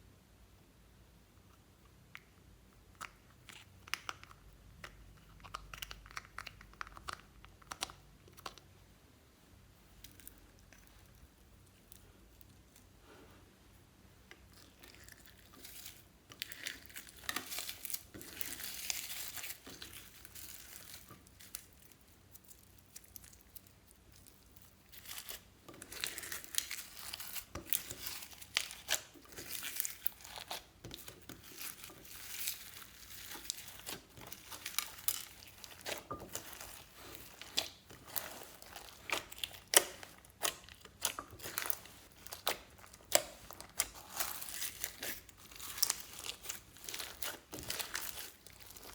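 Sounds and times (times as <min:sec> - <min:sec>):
slime crackling and popping: 0:14.3 - 0:48.9.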